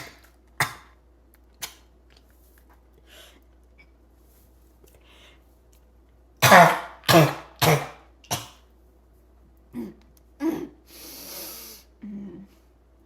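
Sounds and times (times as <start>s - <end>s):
person coughing: 6.4s - 8.6s, 9.7s - 10.8s
long breath: 10.9s - 11.9s.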